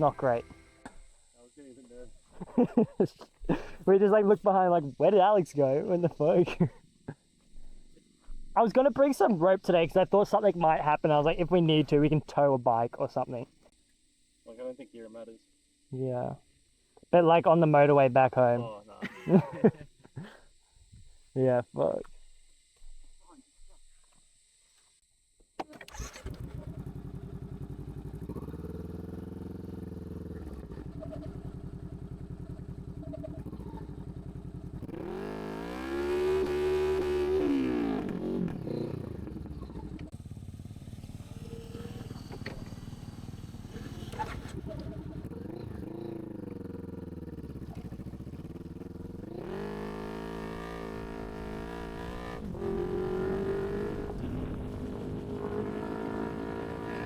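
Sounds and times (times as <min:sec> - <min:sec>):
motorcycle engine revving: 0:00.0 - 0:08.2, 0:25.9 - 0:57.0.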